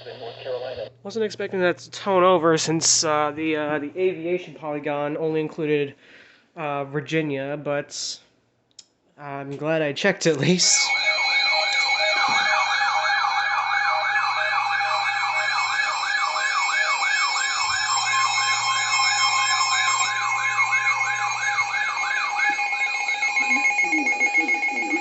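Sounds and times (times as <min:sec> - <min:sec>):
emergency alert warbling tone: 0:10.4 - 0:25.0
steady alarm tone: 0:10.4 - 0:25.0.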